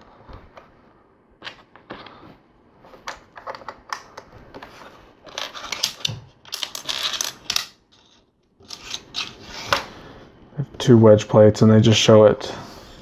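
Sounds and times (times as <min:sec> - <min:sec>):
plastic bricks clattering: 0:03.4 - 0:09.4.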